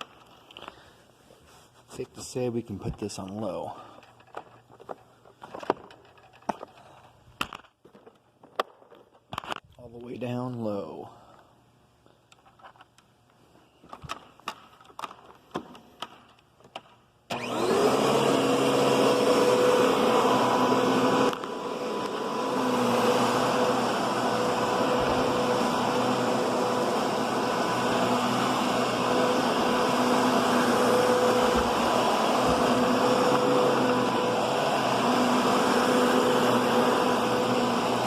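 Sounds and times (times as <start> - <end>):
vacuum cleaner whining: 17.3 - 38.0.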